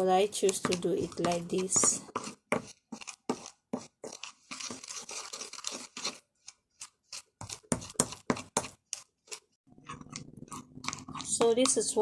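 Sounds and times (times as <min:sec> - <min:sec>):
utensil scraping in a bowl: 0:00.0 - 0:12.0.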